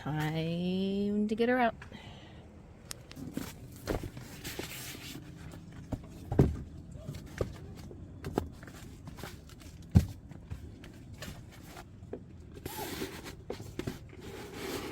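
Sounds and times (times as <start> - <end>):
dull thumps and knocks of gear: 5.7 - 11.5.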